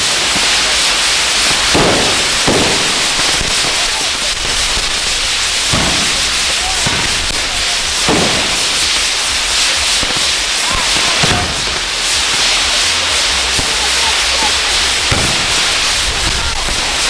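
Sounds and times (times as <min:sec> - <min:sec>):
fireworks rushing hiss: 0:00.0 - 0:17.0.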